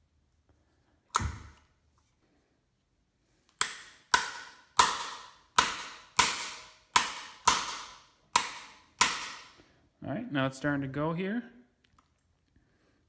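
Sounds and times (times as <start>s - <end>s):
hammer striking metal: 3.6s - 9.6s.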